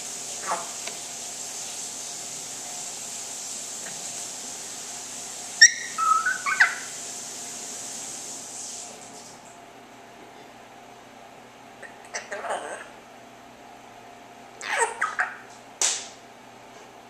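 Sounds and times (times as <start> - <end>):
parrot whistled chirps: 5.6 - 6.9, 14.6 - 15.4.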